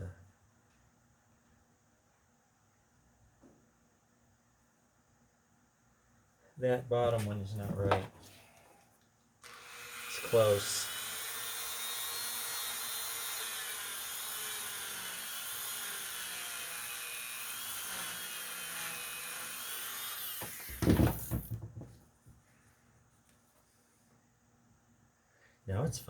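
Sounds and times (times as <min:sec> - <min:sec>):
rotary tool high whine: 0:09.4 - 0:20.8
knocks: 0:20.8 - 0:22.0.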